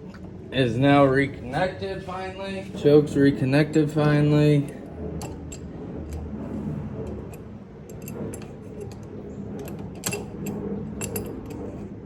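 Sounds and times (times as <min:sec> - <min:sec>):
metal tools clicking and tapping: 0:07.1 - 0:11.8.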